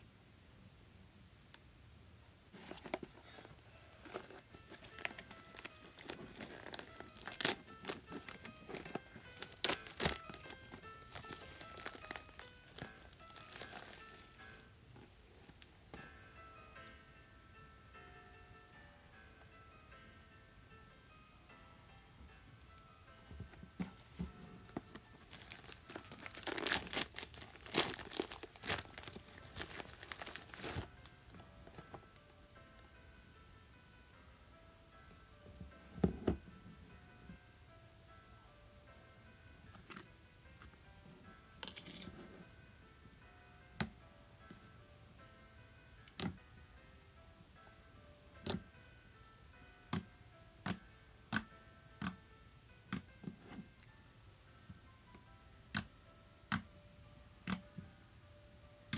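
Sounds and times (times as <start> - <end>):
soft background music: 0.7 - 58.9
crinkling and crackling: 2.5 - 16.1, 23.2 - 32.2, 41.6 - 42.5.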